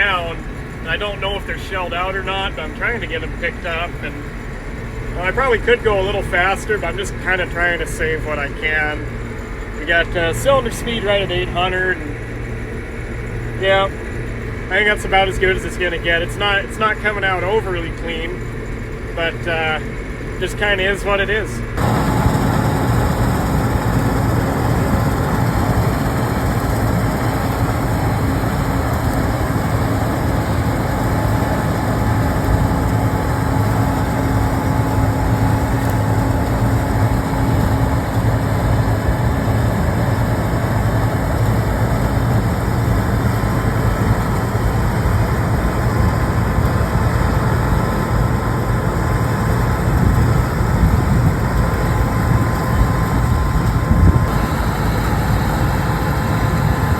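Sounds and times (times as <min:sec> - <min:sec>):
combine harvester drone: 0:00.0 - 0:56.9.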